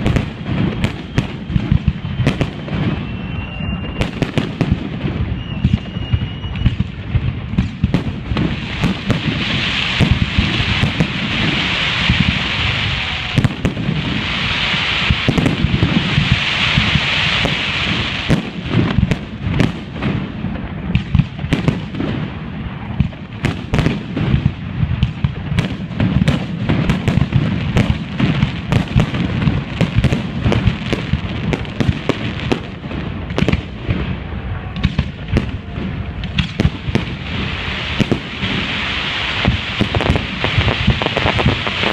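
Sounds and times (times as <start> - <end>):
fireworks bursts and bangs: 0.0 - 41.9
loud hiss: 8.4 - 18.7, 36.8 - 41.9.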